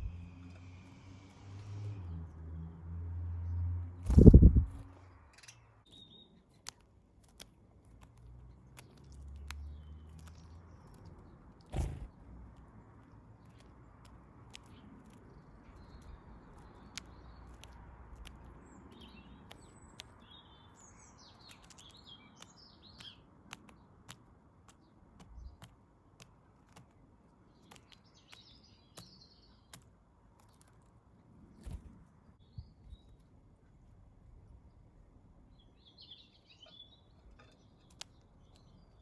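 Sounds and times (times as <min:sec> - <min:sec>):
small birds chirping: 0:00.0 - 0:39.0
sharp ticks and taps: 0:06.4 - 0:30.9, 0:37.4 - 0:39.0.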